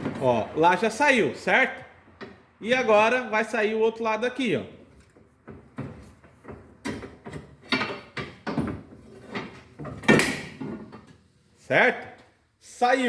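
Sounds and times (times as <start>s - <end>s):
pry bar metal knocks and scrapes: 5.4s - 11.2s.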